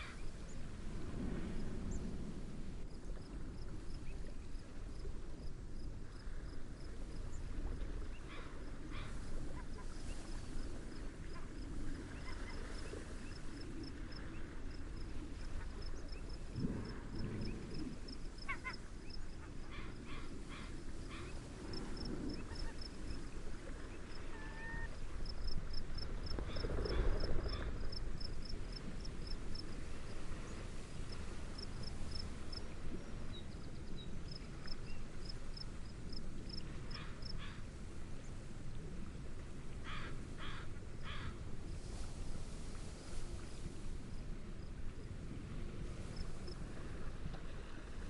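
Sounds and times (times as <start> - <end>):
gentle waves: 0.0 - 48.0
steady wind: 0.0 - 48.0
cricket chirping: 12.2 - 23.2, 24.1 - 29.8, 31.0 - 32.6, 33.3 - 37.5.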